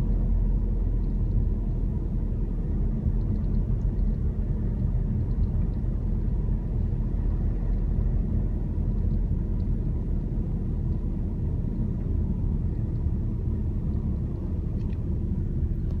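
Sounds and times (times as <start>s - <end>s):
car low rumble: 0.0s - 16.0s
faint ticks: 3.1s - 4.3s, 5.2s - 5.9s.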